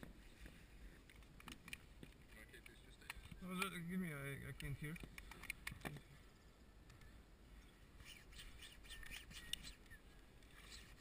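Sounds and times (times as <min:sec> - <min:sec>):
high bird chirps: 0:08.0 - 0:11.0.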